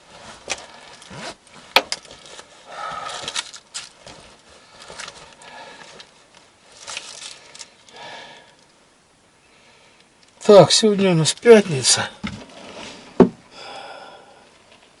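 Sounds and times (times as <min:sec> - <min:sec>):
jacket rustling: 0:00.0 - 0:07.9.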